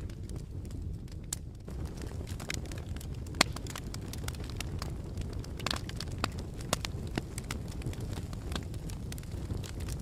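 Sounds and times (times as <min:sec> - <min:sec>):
campfire crackling and popping: 0:00.0 - 0:10.0
low rumble of flames: 0:00.0 - 0:10.0.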